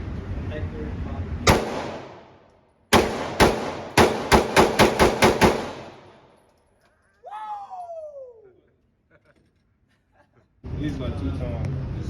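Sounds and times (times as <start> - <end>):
pistol shots: 1.4 - 6.4
gunshot echo: 1.5 - 6.4.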